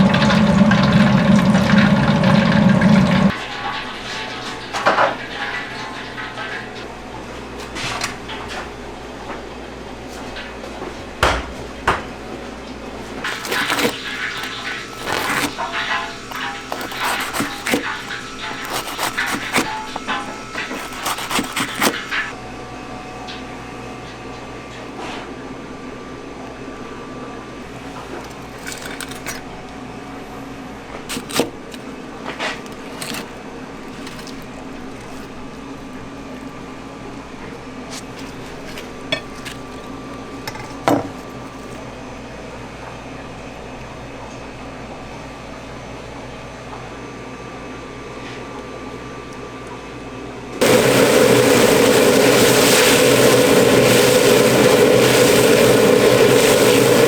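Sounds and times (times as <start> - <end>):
machine hum: 0.0 - 3.3, 13.0 - 22.4, 50.6 - 57.0
utensils and dishes clinking: 13.2 - 22.3, 27.8 - 29.5.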